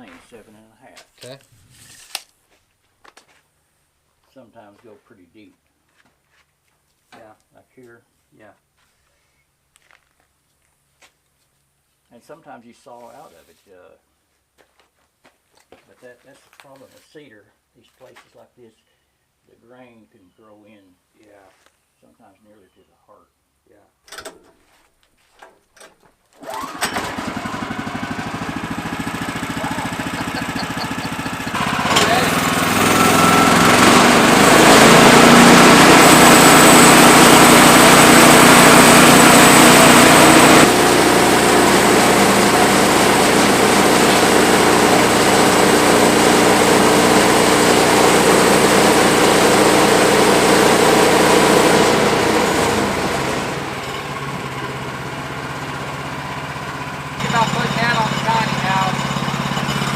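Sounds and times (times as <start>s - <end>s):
sawmill gas engine revving: 26.4s - 59.9s.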